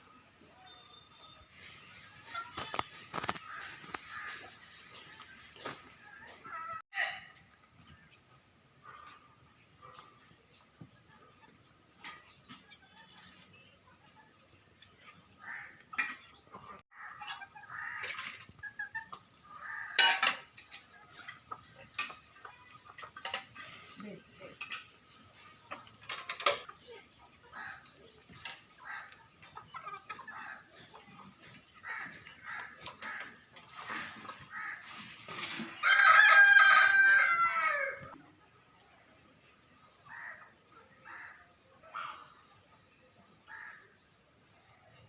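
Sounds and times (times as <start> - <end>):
chickens clucking: 0.0 - 6.8, 7.4 - 45.0
metal pots clinking: 20.0 - 25.2
rooster crowing: 35.8 - 38.1.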